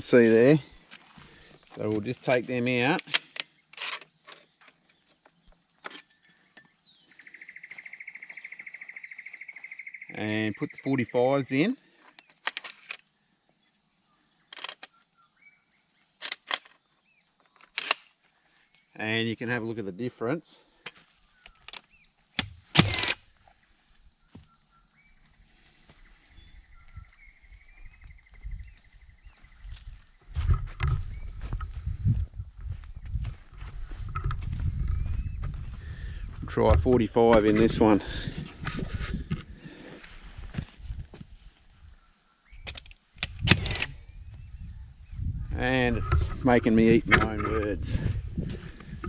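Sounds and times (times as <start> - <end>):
birds chirping: 0.0 - 49.0
stapler magazine clicks and rattle: 14.5 - 15.0, 16.2 - 16.8, 17.6 - 18.1, 22.4 - 23.2, 42.7 - 44.0
sharp clicks: 17.5 - 18.1, 20.8 - 23.2, 42.6 - 44.0.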